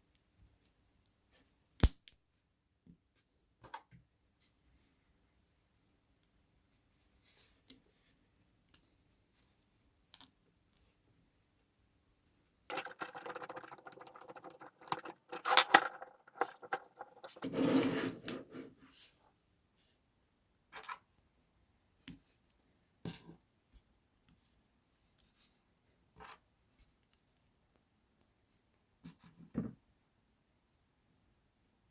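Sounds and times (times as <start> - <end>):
small hard objects clicking and rattling: 12.7 - 17.8.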